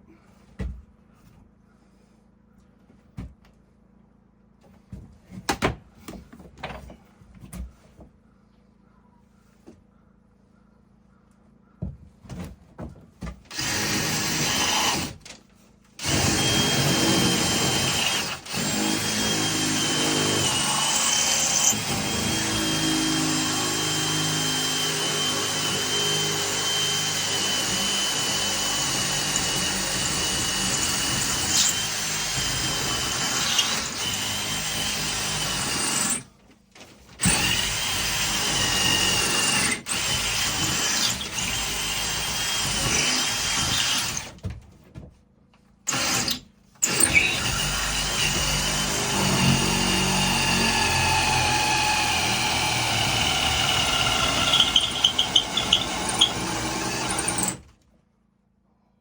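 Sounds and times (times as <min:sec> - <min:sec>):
power drill boring into wood: 0:13.5 - 0:15.2, 0:16.0 - 0:36.3, 0:37.2 - 0:44.4, 0:45.9 - 0:57.7.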